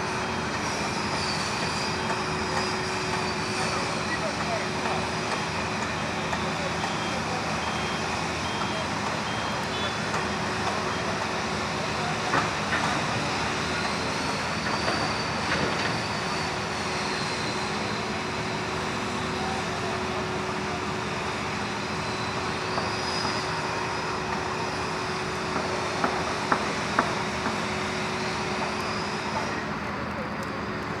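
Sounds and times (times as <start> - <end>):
heavy machinery humming: 0.0 - 31.0.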